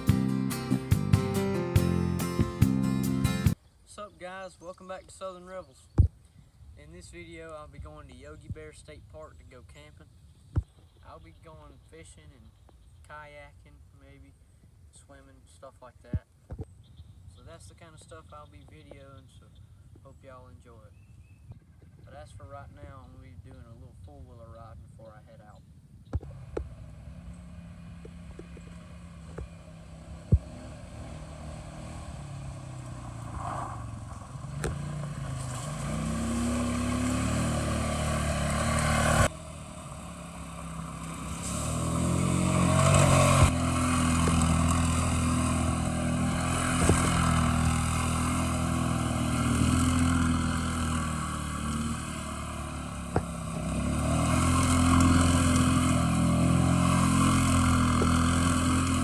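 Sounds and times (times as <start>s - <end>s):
atv engine running: 0.0s - 3.6s, 26.2s - 59.0s.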